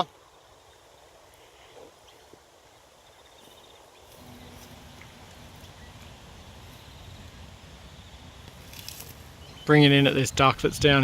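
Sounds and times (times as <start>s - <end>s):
faint outdoor background noise: 0.0s - 11.0s
low rumble: 4.1s - 9.5s.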